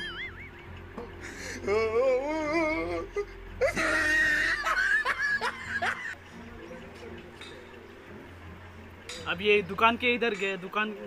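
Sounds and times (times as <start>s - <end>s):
people laughing loudly: 3.2s - 6.2s.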